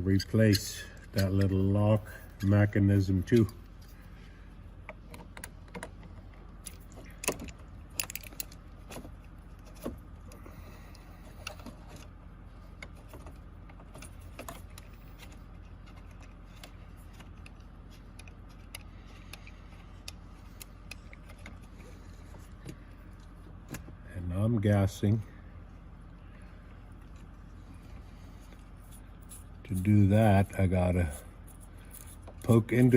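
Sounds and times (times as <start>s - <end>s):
faint steady low hum: 0.0s - 32.9s
keys and lock parts clicking: 6.6s - 9.0s, 31.0s - 32.9s.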